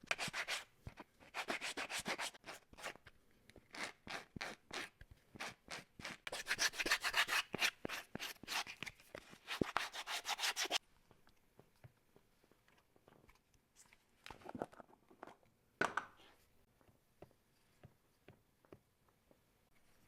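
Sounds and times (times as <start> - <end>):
sandpaper scraping leather: 1.3 - 3.0, 9.4 - 10.8.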